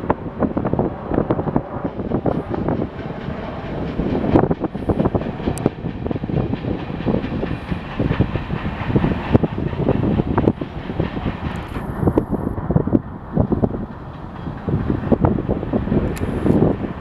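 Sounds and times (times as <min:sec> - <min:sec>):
freight train wheels clattering: 0:00.5 - 0:17.0.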